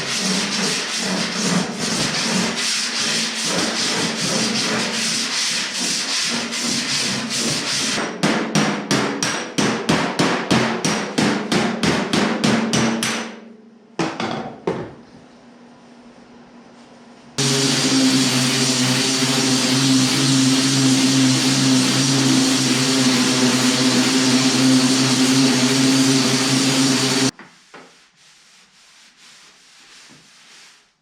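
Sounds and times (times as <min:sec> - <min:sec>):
abrasive rubbing on steel: 0:17.4 - 0:27.3.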